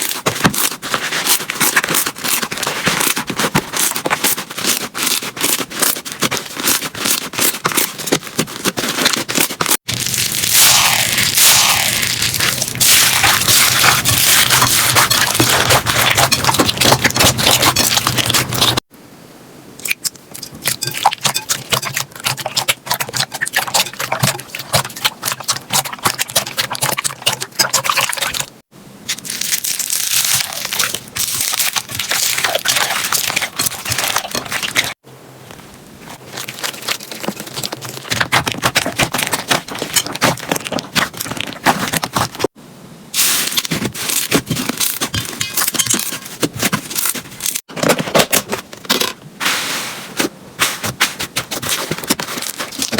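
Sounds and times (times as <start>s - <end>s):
slime crackling and popping: 0.0s - 18.8s, 29.1s - 35.0s.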